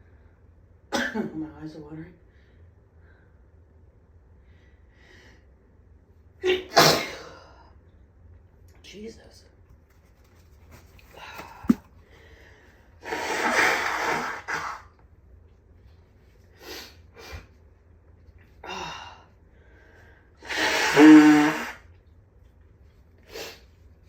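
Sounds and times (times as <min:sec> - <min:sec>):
person sneezing: 0:06.5 - 0:07.4, 0:11.4 - 0:11.9, 0:20.5 - 0:21.8.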